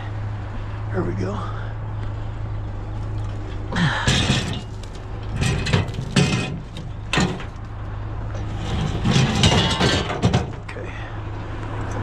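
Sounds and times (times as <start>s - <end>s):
scrap metal clattering and scraping: 3.1s - 10.8s.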